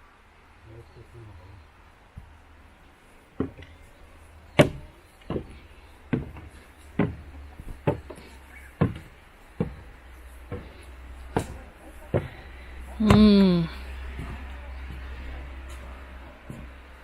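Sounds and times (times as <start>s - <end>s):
sharp knocks: 4.6s - 8.2s, 8.8s - 9.9s.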